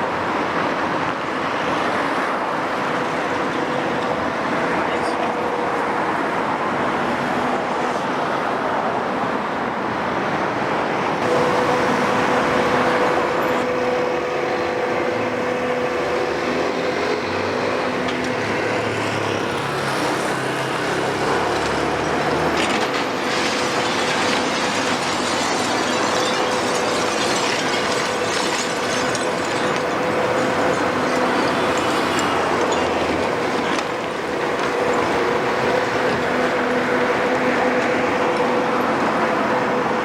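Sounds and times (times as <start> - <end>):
excavator diesel engine under load: 9.0 - 40.0.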